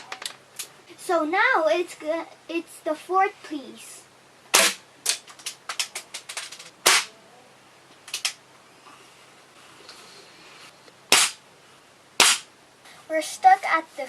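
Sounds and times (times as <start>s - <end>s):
airsoft pistol shots: 4.5s - 4.8s, 6.8s - 7.1s, 11.1s - 11.4s, 12.2s - 12.5s.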